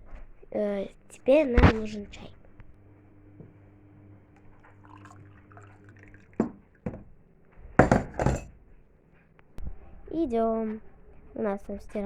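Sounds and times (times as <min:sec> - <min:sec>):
washing machine humming: 0:04.5 - 0:07.0
water sloshing: 0:04.6 - 0:07.1.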